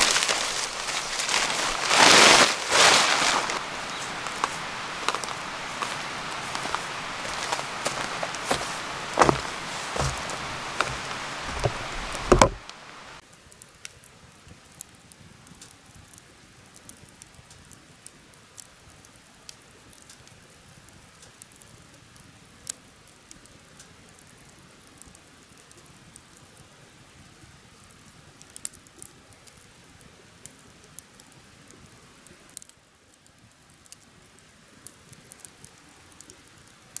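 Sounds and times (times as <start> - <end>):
bonfire crackling and popping: 0.0 - 13.2
faint hiss: 0.0 - 13.2.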